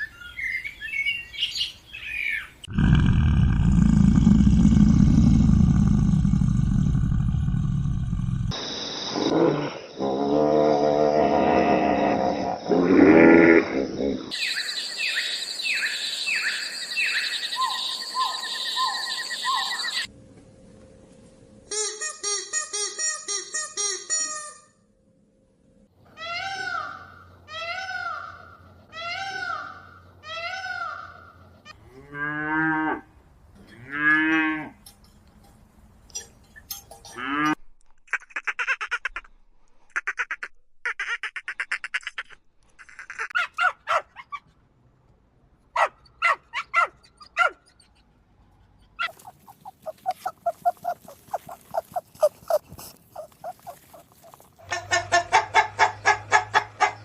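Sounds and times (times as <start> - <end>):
cow mooing: 31.8 - 34.8, 37.1 - 37.6
chickens clucking: 48.7 - 57.0.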